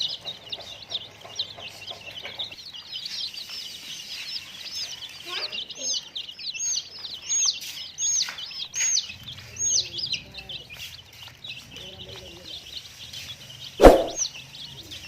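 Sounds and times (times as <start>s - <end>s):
baby chicks peeping: 0.0s - 15.0s
sharp knock: 13.8s - 14.2s.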